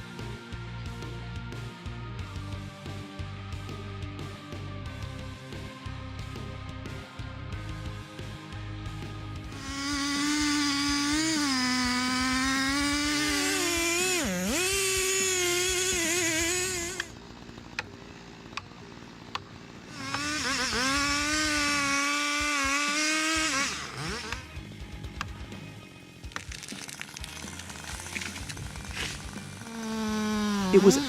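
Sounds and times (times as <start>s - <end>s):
chainsaw revving: 9.2s - 25.2s, 26.1s - 31.0s.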